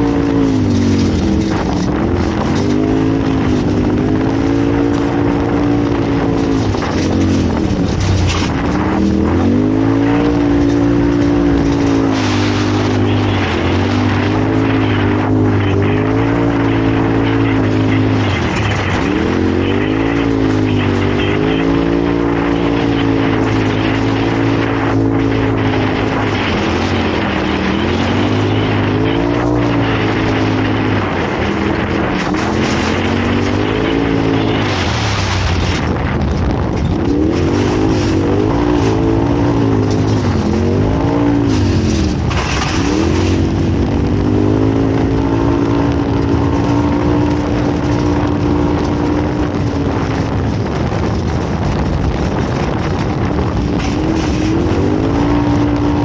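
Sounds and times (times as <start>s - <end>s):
race vehicle engine revving: 0.0s - 56.0s
steady rush of noise: 0.0s - 56.0s.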